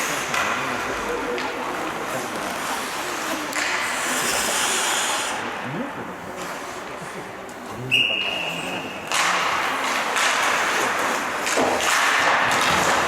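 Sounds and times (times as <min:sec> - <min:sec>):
rushing noise from rink: 0:01.6 - 0:05.5.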